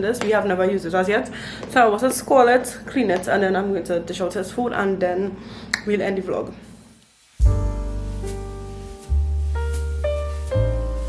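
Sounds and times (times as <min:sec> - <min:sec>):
soft piano music: 0:07.4 - 0:11.0.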